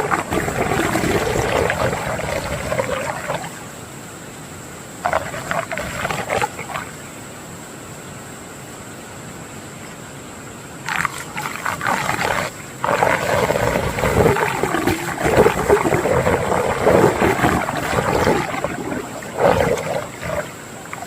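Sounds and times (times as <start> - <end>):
water gurgling in a whirlpool: 0.0 - 4.1, 4.8 - 7.3, 10.8 - 21.0.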